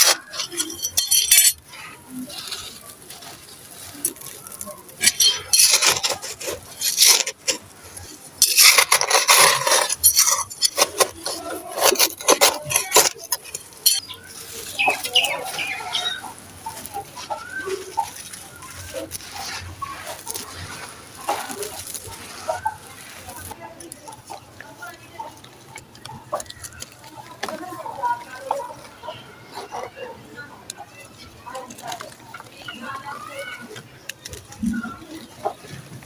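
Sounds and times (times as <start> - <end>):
sand-cement chunks being crushed: 0.0 - 24.0
bird calls: 12.6 - 22.9.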